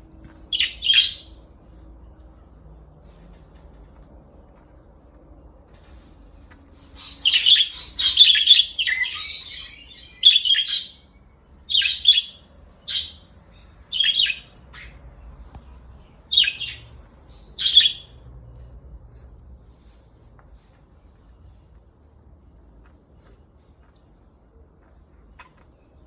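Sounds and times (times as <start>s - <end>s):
budgerigars chirping: 0.5s - 1.4s, 7.0s - 11.0s, 11.7s - 13.2s, 13.9s - 15.0s, 16.3s - 18.2s.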